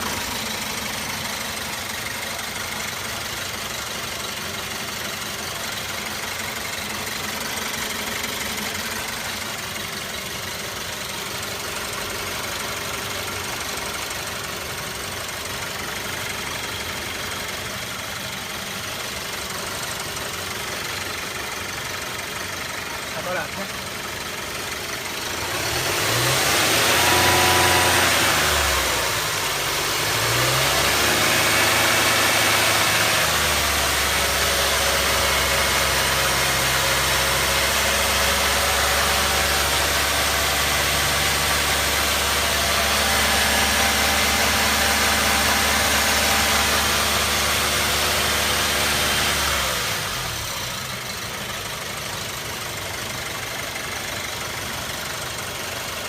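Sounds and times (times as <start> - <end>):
car engine revving: 0.0 - 3.8, 24.4 - 55.8.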